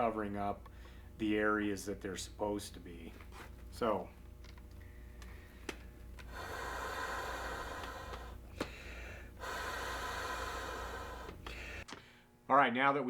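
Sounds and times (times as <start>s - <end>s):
person blowing into a valve: 6.3s - 11.8s.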